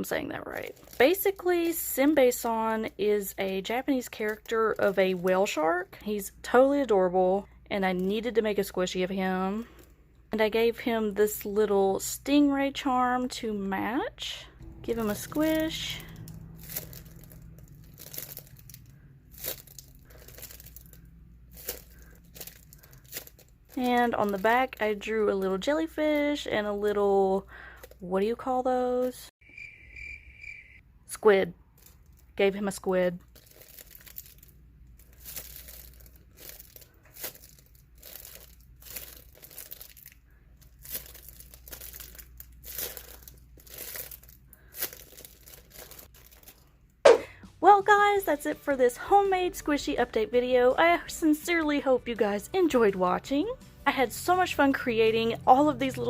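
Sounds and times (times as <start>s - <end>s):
paper crinkling: 15.0s - 27.0s, 33.2s - 46.8s.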